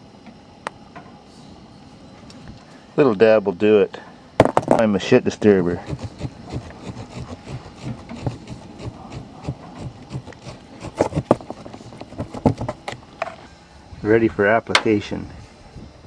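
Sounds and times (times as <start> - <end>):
mixing tool scraping and tapping: 5.8 - 13.4.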